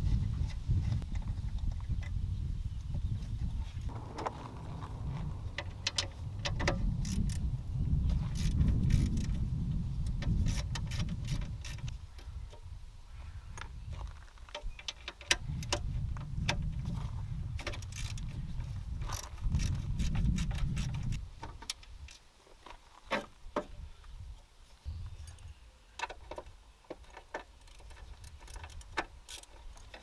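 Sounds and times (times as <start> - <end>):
low rumbling handling noise: 3.8 - 11.3.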